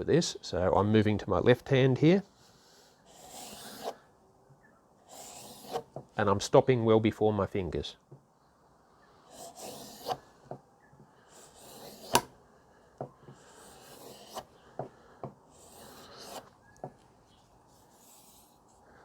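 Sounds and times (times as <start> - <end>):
knife rubbing on leather strop: 5.1 - 5.9, 11.4 - 12.3, 13.5 - 14.5, 15.6 - 16.5.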